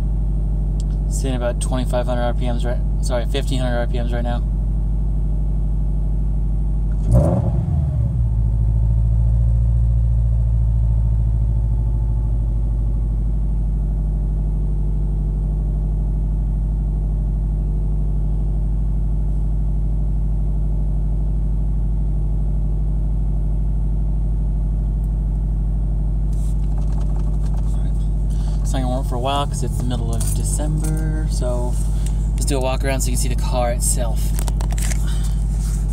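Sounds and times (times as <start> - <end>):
car engine fast idling: 26.0 - 35.9.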